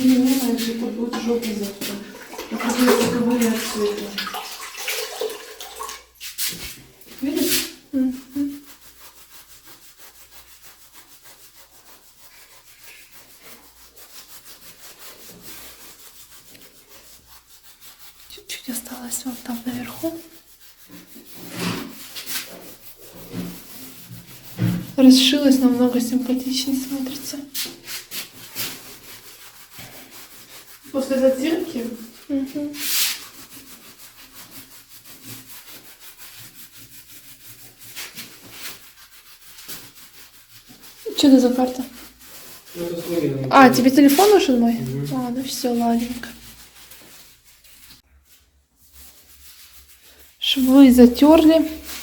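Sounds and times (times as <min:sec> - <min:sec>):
hand tool scraping grout: 0:00.0 - 0:48.0, 0:48.8 - 0:52.0.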